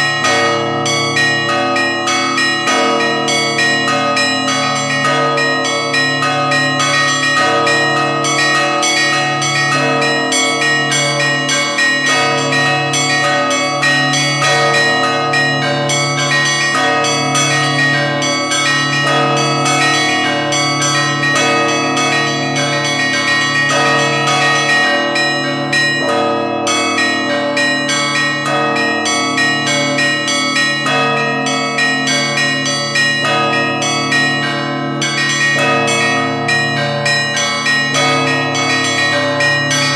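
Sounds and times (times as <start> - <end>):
deep bell tolling: 0.0 - 39.9.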